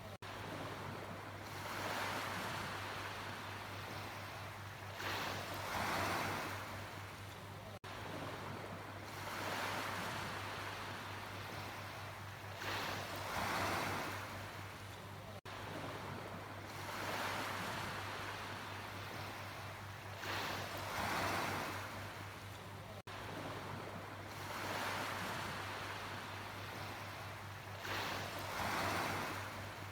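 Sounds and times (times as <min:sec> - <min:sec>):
sea waves washing in: 0:23.2 - 0:29.9.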